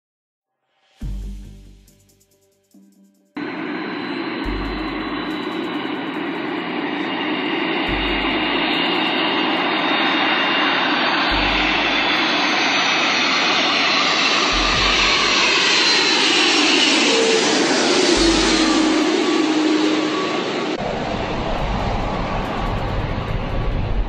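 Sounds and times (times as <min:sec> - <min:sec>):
deep low pulse: 0:01.0 - 0:02.1, 0:04.3 - 0:06.5, 0:07.8 - 0:09.9, 0:11.3 - 0:13.0, 0:14.4 - 0:16.6, 0:17.5 - 0:19.5
high whine rising in pitch: 0:01.0 - 0:24.0
airplane engines roaring: 0:02.8 - 0:24.0.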